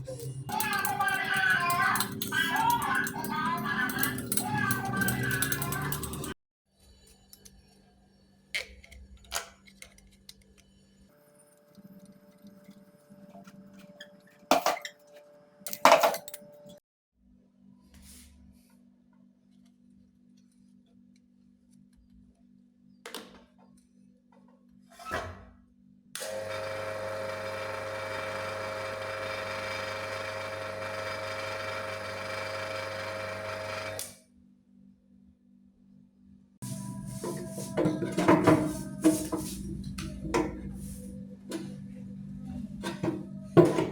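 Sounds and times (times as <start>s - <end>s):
parts knocking and clanking: 0.5s - 6.4s, 14.5s - 14.9s, 15.7s - 16.5s, 37.3s - 40.8s, 42.8s - 43.9s
electric motor humming: 26.2s - 34.1s.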